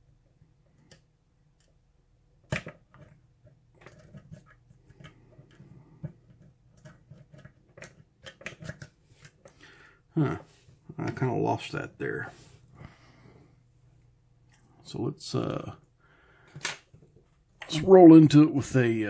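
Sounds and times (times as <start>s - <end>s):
lock pick clicking and scraping: 3.8s - 9.6s.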